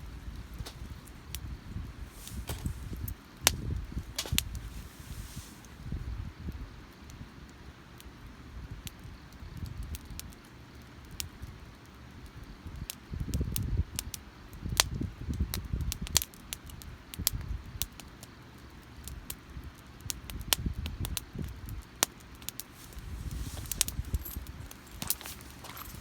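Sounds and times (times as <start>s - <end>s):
campfire crackling: 0.0s - 12.2s, 21.1s - 26.0s
low fire rumble: 0.0s - 26.0s.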